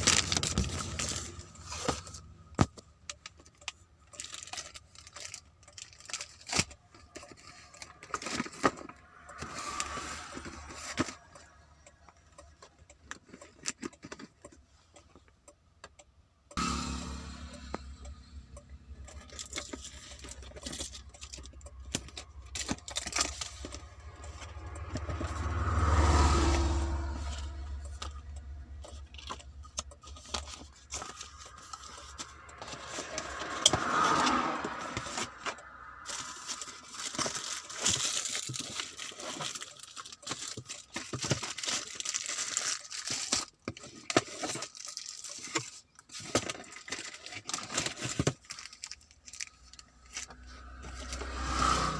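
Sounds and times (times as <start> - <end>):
packaging rustling and crinkling: 0.0 - 2.2, 36.0 - 50.3.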